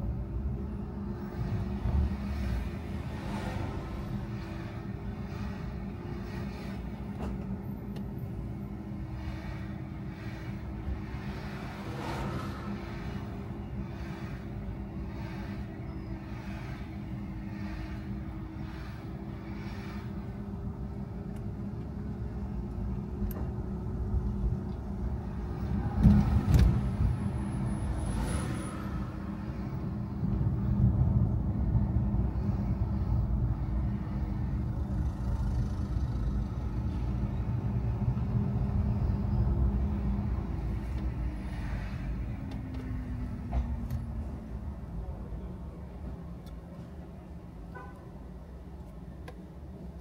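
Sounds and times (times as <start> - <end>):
car engine and road rumble: 0.0 - 50.0.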